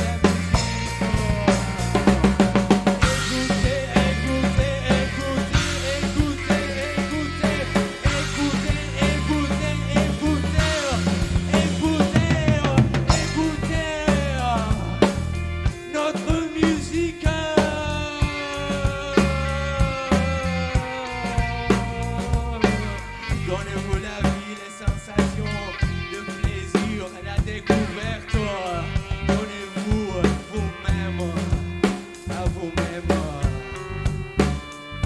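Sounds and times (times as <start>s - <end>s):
pitch-bending lead line: 0.0s - 25.3s
bass line: 0.0s - 35.0s
drum kit: 0.0s - 35.0s
rock band playing: 0.0s - 35.0s.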